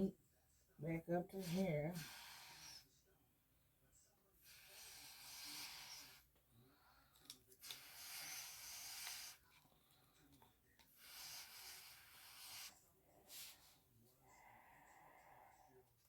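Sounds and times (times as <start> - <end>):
breathing through respirator mask: 1.4 - 2.9, 4.4 - 6.3, 7.6 - 9.4, 10.9 - 15.4.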